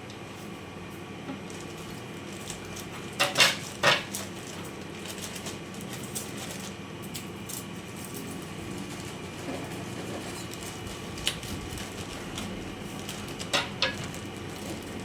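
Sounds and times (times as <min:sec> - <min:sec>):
dishes and utensils clattering: 0:13.4 - 0:14.2.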